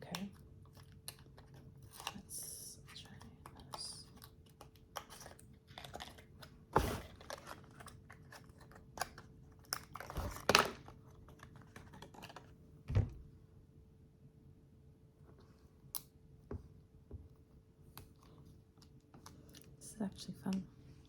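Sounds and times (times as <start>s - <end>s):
faint steady hum: 0.0s - 21.0s
clicks and rustles of packaging: 3.0s - 12.6s.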